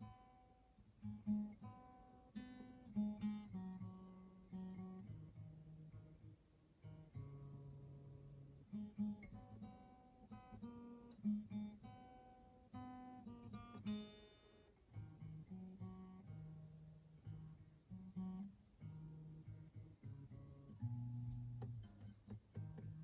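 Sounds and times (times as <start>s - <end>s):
acoustic guitar playing: 0.0s - 23.0s.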